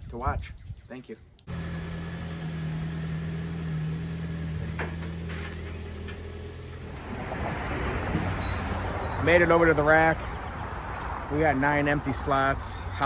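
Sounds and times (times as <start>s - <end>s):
vehicle engine droning: 1.5s - 10.0s.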